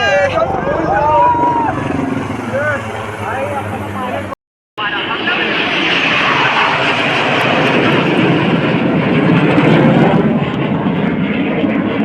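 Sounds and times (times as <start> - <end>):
jet aircraft roaring past: 0.0 - 12.0.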